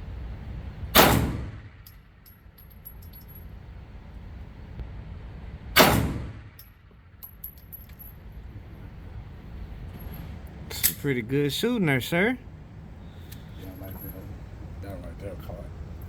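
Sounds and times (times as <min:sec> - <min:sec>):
pistol shots echoing: 0:01.0 - 0:01.7, 0:05.8 - 0:06.5
light metal clinks: 0:01.8 - 0:03.6, 0:06.6 - 0:08.5, 0:09.9 - 0:11.1, 0:13.3 - 0:14.4.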